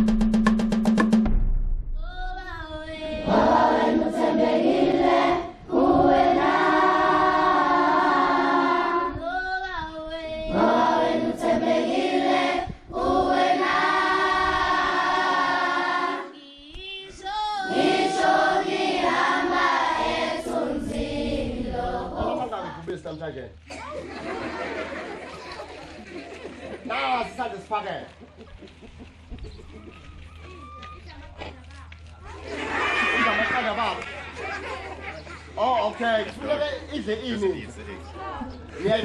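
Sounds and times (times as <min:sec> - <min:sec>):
choir singing: 0:02.8 - 0:09.2, 0:10.4 - 0:16.4, 0:17.4 - 0:22.8.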